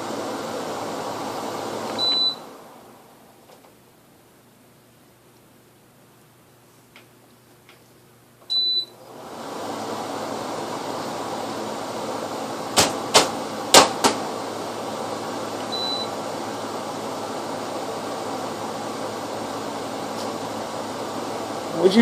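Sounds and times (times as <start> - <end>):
air conditioner fan whoosh: 0.0 - 5.0, 5.6 - 22.0
air conditioner beep: 1.9 - 2.7, 8.4 - 9.0, 15.7 - 16.3.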